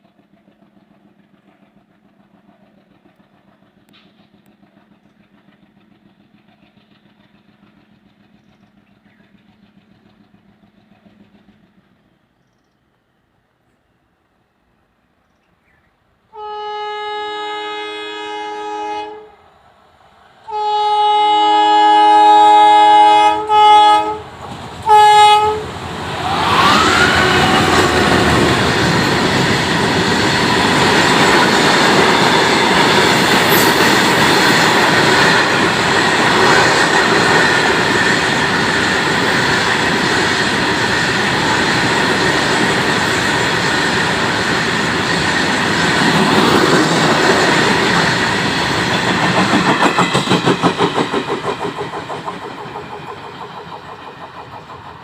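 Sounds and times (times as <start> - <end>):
train wheels clattering over rails: 0.0 - 12.7, 24.0 - 55.0
locomotive horn blasts: 16.3 - 19.4, 20.5 - 25.7.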